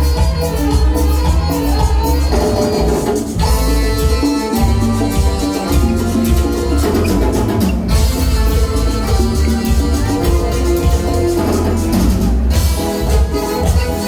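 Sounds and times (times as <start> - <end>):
loud latin dance music: 0.0 - 14.0.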